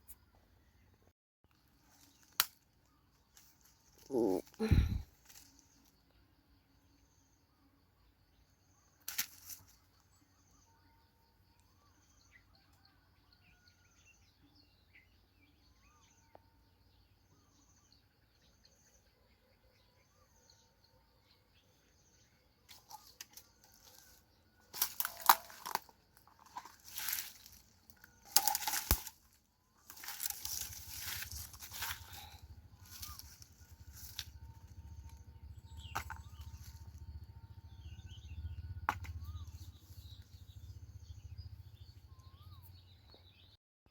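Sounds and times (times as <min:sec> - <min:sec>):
faint chirps: 0:00.0 - 0:43.6
rustling and crackling: 0:22.7 - 0:34.4.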